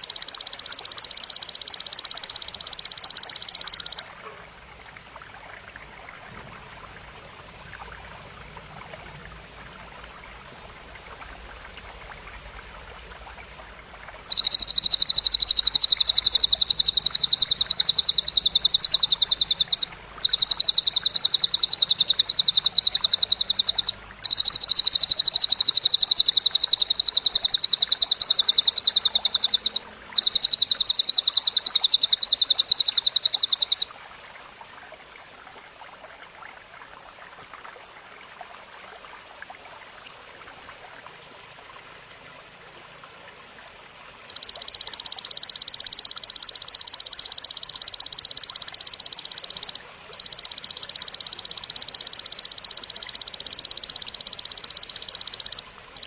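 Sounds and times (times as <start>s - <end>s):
high-pitched pulsed buzzing trill: 14.3s - 33.8s.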